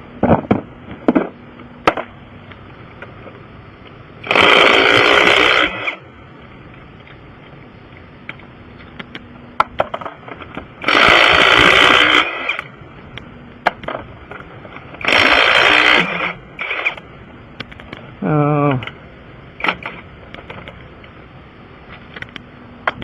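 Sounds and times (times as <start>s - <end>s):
impact wrench bursts: 4.2s - 6.0s, 10.8s - 12.7s, 15.0s - 17.0s.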